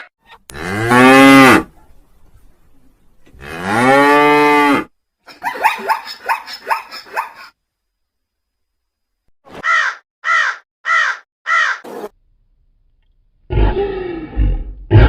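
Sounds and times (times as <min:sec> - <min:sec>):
harsh bird calls: 0:09.6 - 0:12.1
deep animal call: 0:13.5 - 0:15.0.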